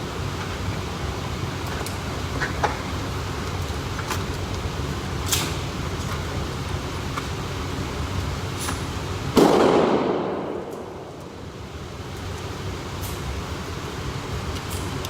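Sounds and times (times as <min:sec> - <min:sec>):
gunshots: 0:09.4 - 0:11.0
steady low rumble: 0:09.4 - 0:14.5.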